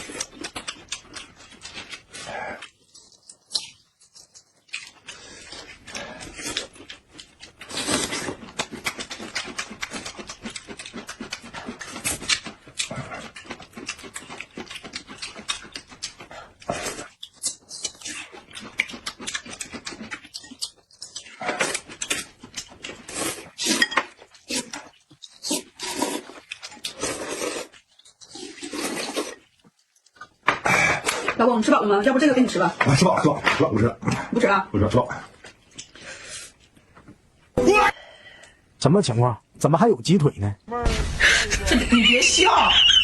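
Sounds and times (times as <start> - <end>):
wet chewing and lip-smacking: 0.0 - 31.4, 35.3 - 37.3.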